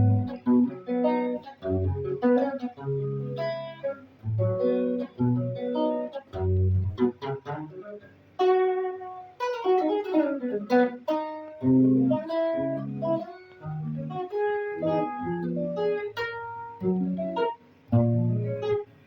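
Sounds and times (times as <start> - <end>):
guitar plucked melody: 0.0 - 19.0.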